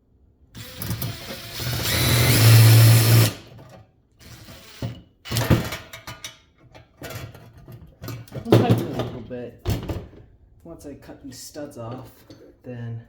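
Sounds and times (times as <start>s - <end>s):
power drill driving a screw: 0.6s - 3.5s, 4.2s - 5.4s.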